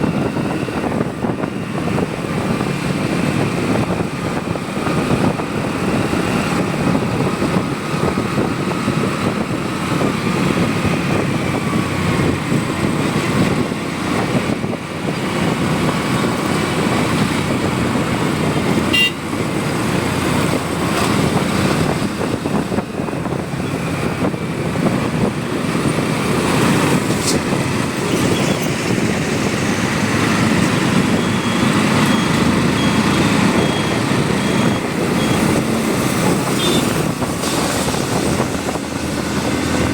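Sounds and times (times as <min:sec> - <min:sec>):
motorcycle road and engine rumble: 0:00.0 - 0:39.9
faint vehicle horns: 0:18.9 - 0:19.2, 0:36.5 - 0:36.9.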